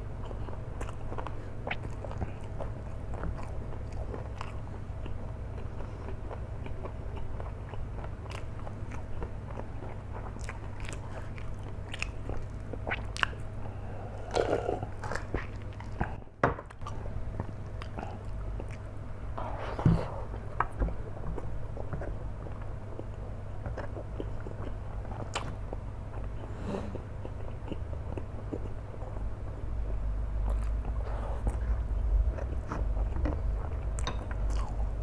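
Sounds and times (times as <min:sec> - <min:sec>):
person chewing noodles: 0:00.0 - 0:16.2, 0:16.8 - 0:19.5, 0:21.3 - 0:35.0.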